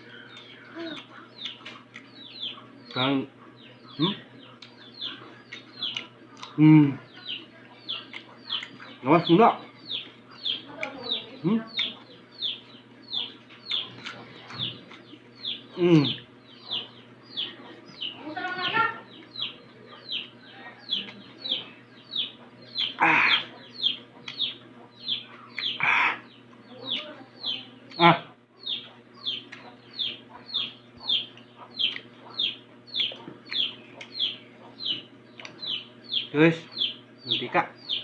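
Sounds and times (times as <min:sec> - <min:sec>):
chickens peeping: 0:00.0 - 0:38.0
louder chicken calls: 0:22.8 - 0:23.6, 0:25.6 - 0:26.3.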